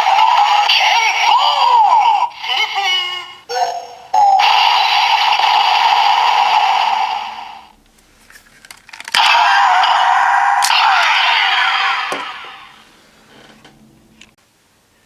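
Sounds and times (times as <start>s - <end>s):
plastic toy clicks: 8.6s - 10.0s
toy sword electronic sound effects: 9.0s - 12.7s.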